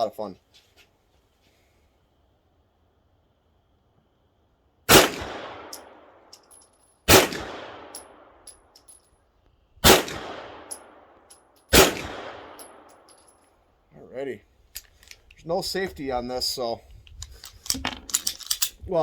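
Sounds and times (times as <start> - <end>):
pistol shots with echo: 4.9 - 6.1, 7.1 - 8.3, 9.8 - 11.1, 11.7 - 12.9.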